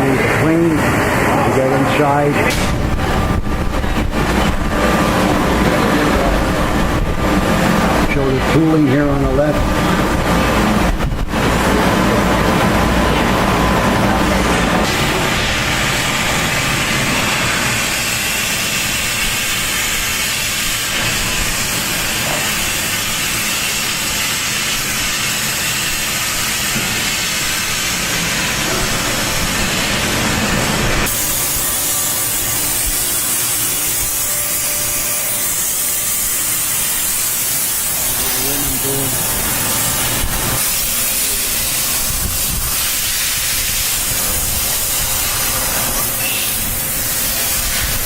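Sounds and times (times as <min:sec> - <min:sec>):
steam cleaner jet hissing: 0:14.8 - 0:48.0.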